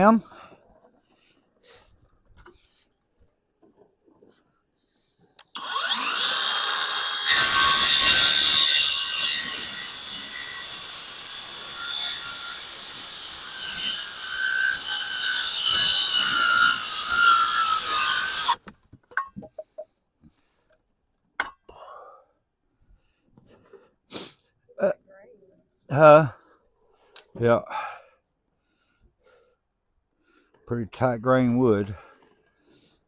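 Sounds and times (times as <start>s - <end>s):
power saw cutting wood: 5.5s - 18.6s.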